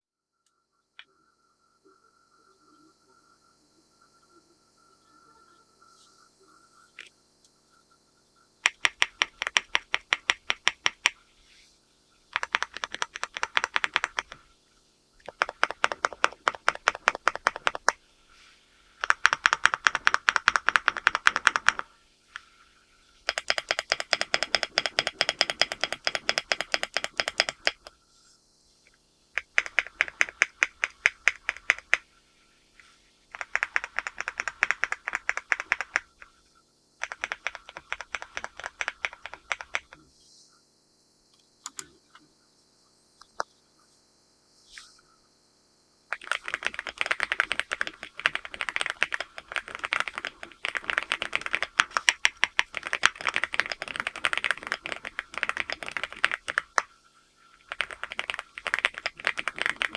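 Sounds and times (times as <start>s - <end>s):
mechanical keyboard typing: 8.6s - 11.2s, 12.3s - 14.5s, 15.2s - 18.0s, 19.0s - 22.5s, 23.2s - 28.0s, 29.4s - 32.1s, 33.3s - 36.4s, 37.0s - 40.0s, 46.1s - 56.9s, 57.6s - 59.9s.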